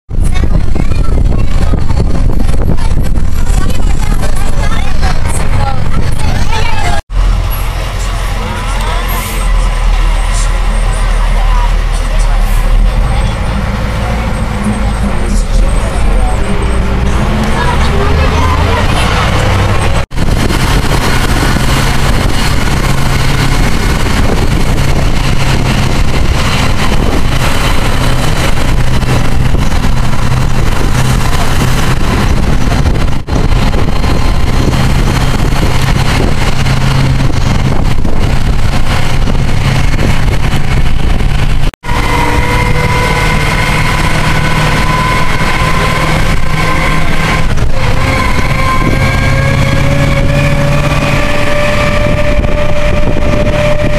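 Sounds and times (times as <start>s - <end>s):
bus engine: 0.1s - 53.9s
road noise: 0.1s - 53.9s.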